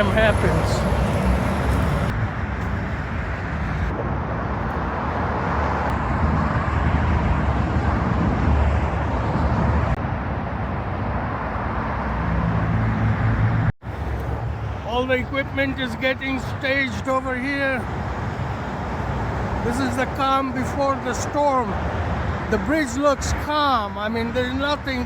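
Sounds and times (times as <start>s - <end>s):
freeway traffic rushing: 0.0s - 25.0s.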